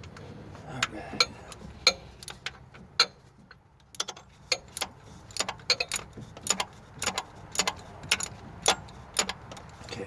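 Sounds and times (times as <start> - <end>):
ratchet wrench clicking: 3.9 - 9.7.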